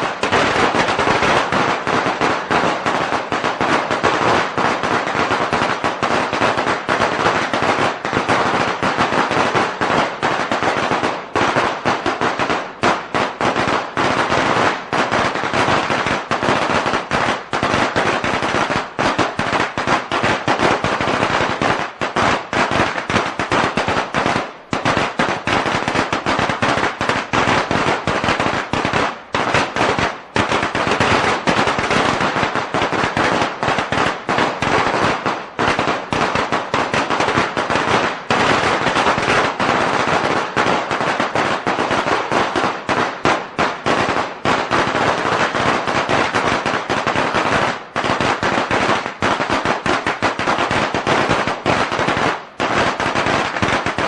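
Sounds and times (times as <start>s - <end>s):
firecrackers crackling: 0.0s - 54.0s.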